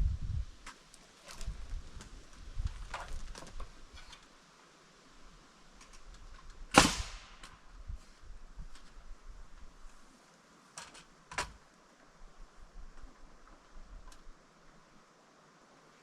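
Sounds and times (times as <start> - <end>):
loud sharp crack: 6.7 - 7.5.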